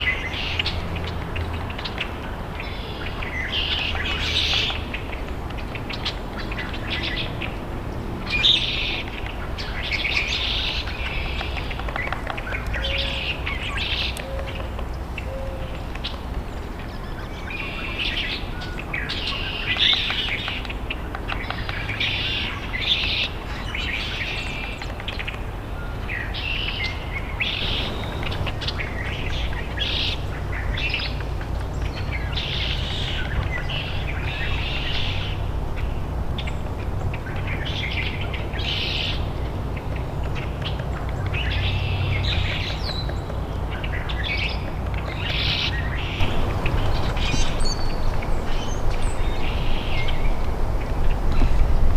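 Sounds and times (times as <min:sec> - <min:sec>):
birds chirping and singing: 0:00.0 - 0:51.9
steady low rumble: 0:27.4 - 0:30.6, 0:46.2 - 0:51.9.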